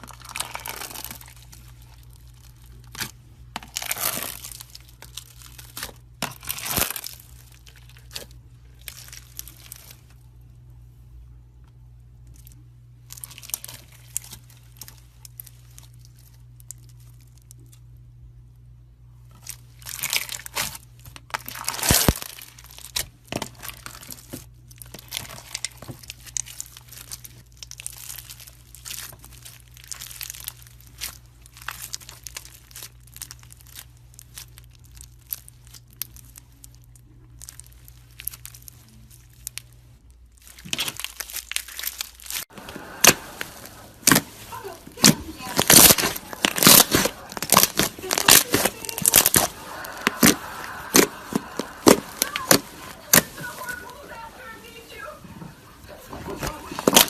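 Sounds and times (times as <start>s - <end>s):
slime crackling and crunching: 0.0s - 10.3s, 12.2s - 18.1s, 19.3s - 57.0s.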